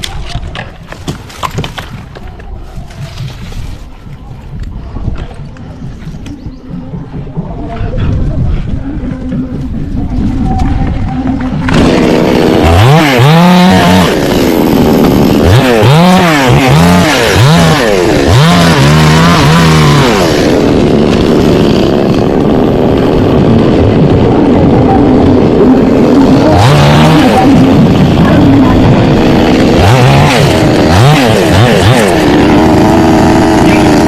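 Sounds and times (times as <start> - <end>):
chainsaw engine revving: 11.4 - 34.0.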